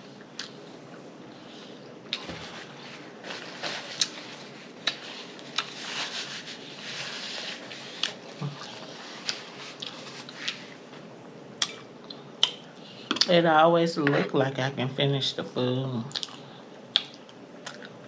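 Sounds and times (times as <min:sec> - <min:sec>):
wet chewing and lip smacking: 0:00.3 - 0:00.6, 0:11.6 - 0:12.6, 0:16.1 - 0:18.0.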